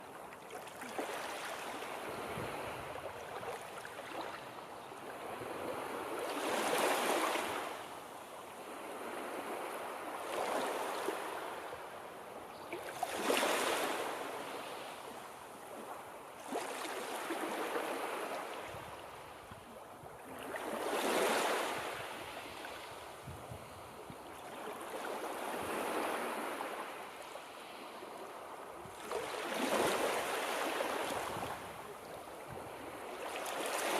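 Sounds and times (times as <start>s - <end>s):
waves breaking: 0.5s - 7.8s, 12.8s - 15.0s, 28.9s - 33.9s.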